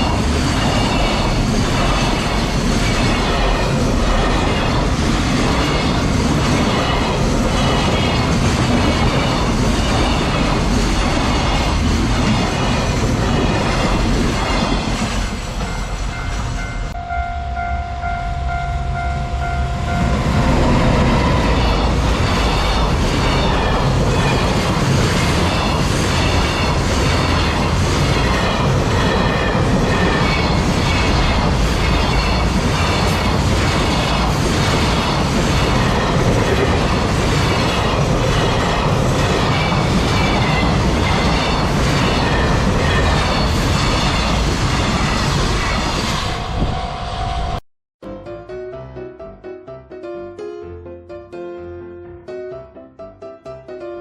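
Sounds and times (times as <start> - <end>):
crossing warning bell: 15.3 - 24.4.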